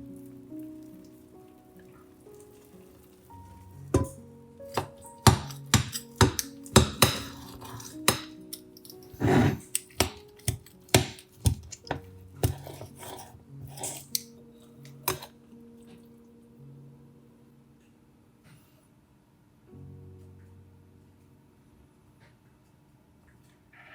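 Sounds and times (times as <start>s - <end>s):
soft background music: 0.0s - 23.7s
utensils knocking on dishes: 3.9s - 8.4s
utensil scraping dish: 7.0s - 8.3s, 9.0s - 14.3s, 15.0s - 15.3s.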